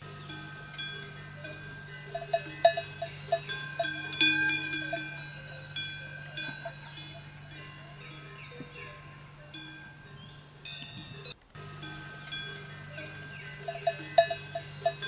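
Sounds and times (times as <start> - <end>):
metal bells clanking: 0.0 - 15.0
steady low hum: 0.0 - 15.0.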